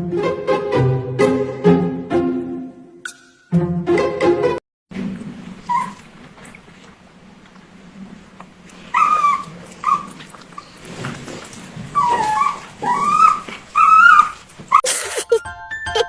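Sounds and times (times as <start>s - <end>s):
dog giving high calls: 5.6s - 6.0s, 8.8s - 10.9s, 11.8s - 15.4s.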